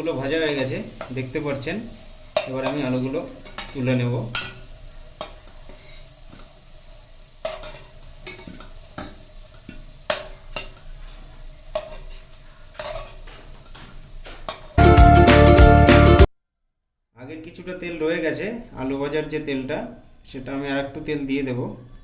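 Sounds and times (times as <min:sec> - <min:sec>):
oil sizzling: 0:00.0 - 0:16.3
spatula scraping and knocking: 0:05.2 - 0:06.5, 0:07.4 - 0:14.8.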